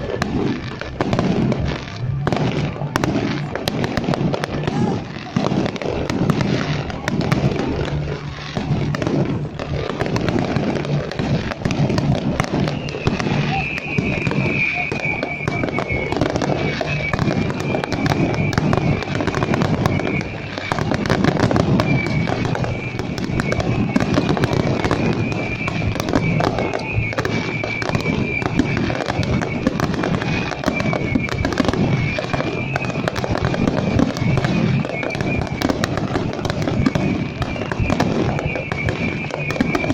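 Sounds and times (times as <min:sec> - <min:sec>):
fireworks bangs and crackles: 0:00.0 - 0:39.9
rumble of shells bursting: 0:02.3 - 0:39.9
high wavering whistle: 0:10.2 - 0:39.9.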